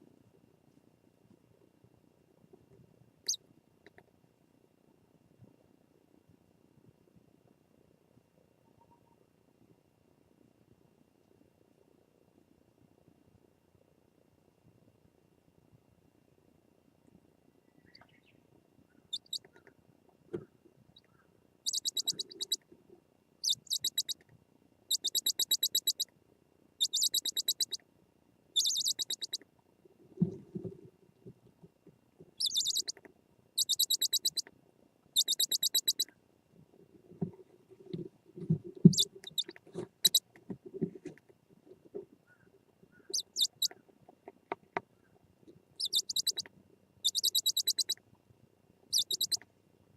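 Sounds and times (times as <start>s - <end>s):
owls giving raspy calls: 21.7s - 22.6s, 23.4s - 24.2s, 24.9s - 26.0s, 26.8s - 27.8s, 28.6s - 29.4s, 32.4s - 33.0s, 35.2s - 36.1s, 38.9s - 40.2s, 42.3s - 43.8s, 45.8s - 48.0s, 48.9s - 49.4s.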